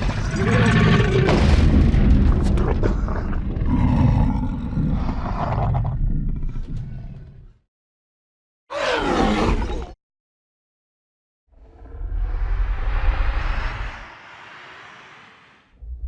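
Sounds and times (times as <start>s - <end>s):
deep dinosaur roar: 2.6s - 7.4s.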